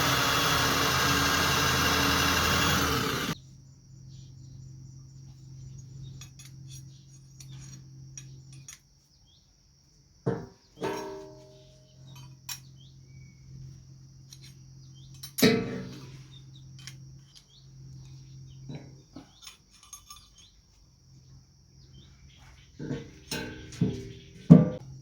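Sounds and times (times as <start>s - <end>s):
ringing metal clank: 10.8s - 12.3s, 22.8s - 24.8s
metal parts clinking: 19.2s - 20.8s.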